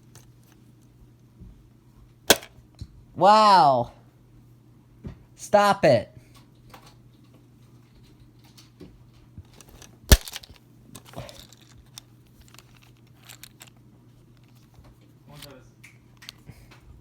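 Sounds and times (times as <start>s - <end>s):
small handling clicks: 9.6s - 13.7s.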